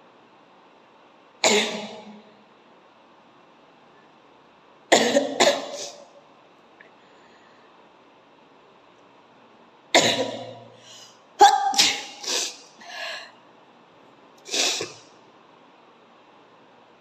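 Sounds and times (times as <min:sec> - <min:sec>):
person sneezing: 0:01.4 - 0:02.1, 0:05.0 - 0:06.0, 0:10.0 - 0:13.1, 0:14.5 - 0:15.1.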